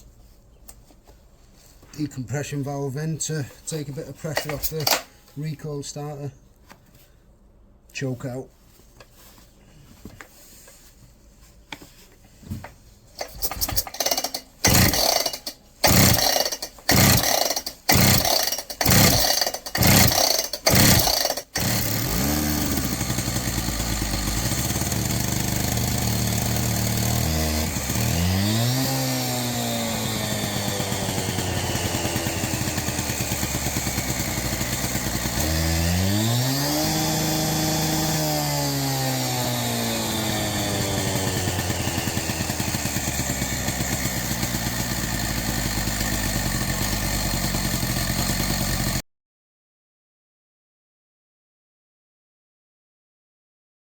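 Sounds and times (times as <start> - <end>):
power cutter engine running: 4.2 - 5.1, 13.2 - 49.0
starter cord pulls: 4.2 - 5.1, 13.2 - 49.0
engine revving: 13.2 - 49.0.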